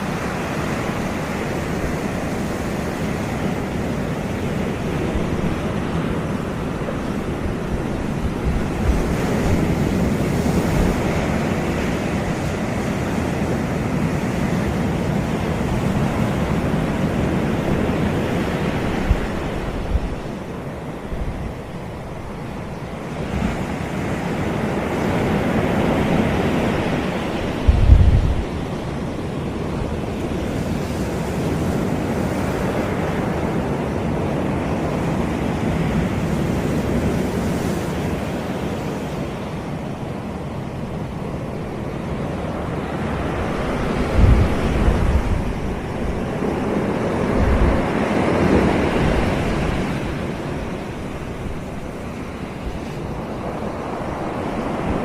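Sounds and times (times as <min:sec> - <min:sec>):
sea waves breaking on beach: 0:00.0 - 0:55.0
wind thumps on microphone: 0:27.3 - 0:28.9, 0:43.6 - 0:46.3.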